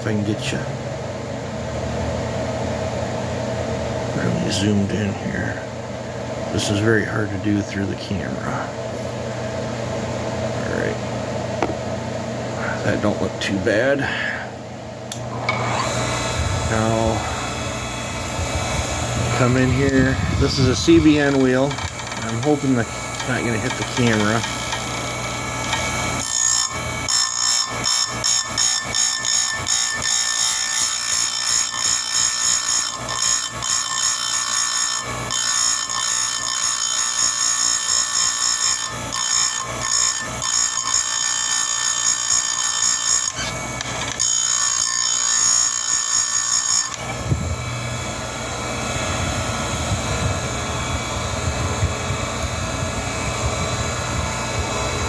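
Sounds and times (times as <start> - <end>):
grinder motor running: 15.1 - 55.0
grinder grinding chain cutters: 15.5 - 55.0.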